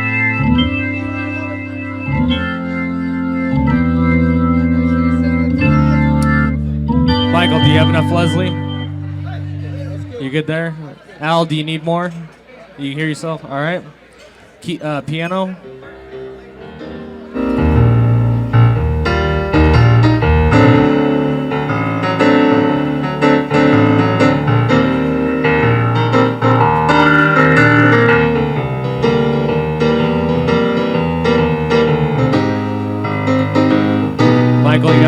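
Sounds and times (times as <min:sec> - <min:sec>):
keyboard piano chords: 0:16.8 - 0:35.0.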